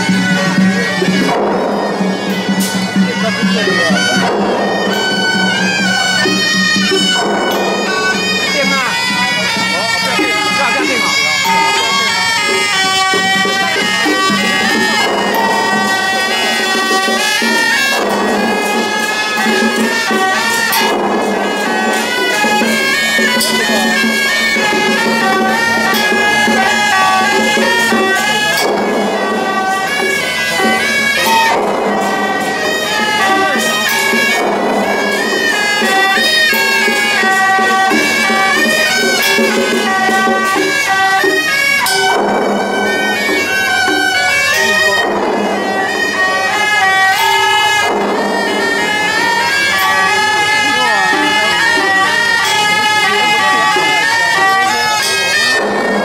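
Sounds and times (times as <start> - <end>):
reedy horn band melody: 0.0 - 56.0.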